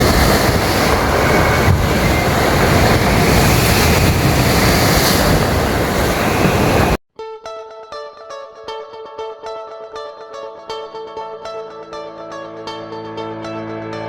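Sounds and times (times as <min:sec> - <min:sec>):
waves washing over stony beach: 0:00.0 - 0:07.0.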